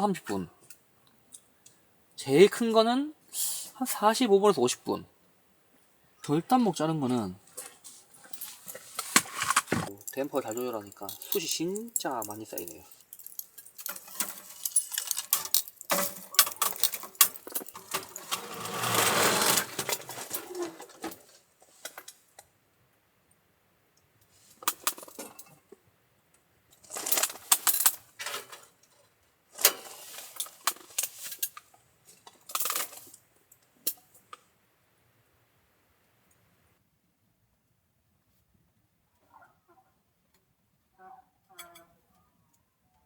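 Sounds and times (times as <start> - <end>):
metal objects clinking: 8.3 - 21.1.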